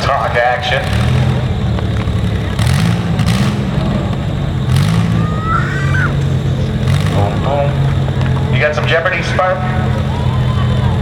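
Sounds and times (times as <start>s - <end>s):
unmuffled engines revving: 0.0s - 11.0s
rising high squeal: 4.8s - 6.3s, 9.6s - 11.0s.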